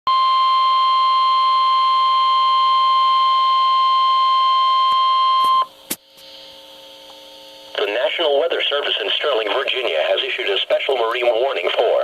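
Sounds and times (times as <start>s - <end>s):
high steady radio alarm tone: 0.1s - 6.6s.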